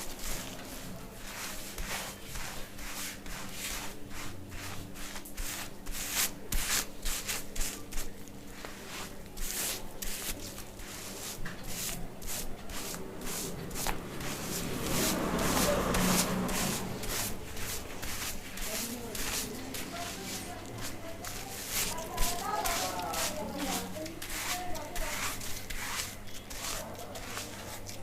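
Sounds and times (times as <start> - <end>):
fingers scrubbing shampooed hair: 0.0 - 28.0.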